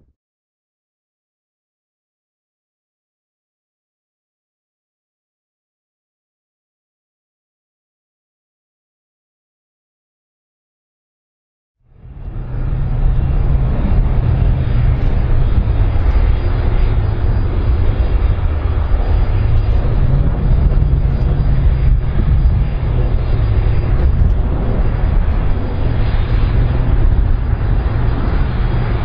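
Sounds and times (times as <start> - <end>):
aircraft engines rumbling: 11.9 - 29.0.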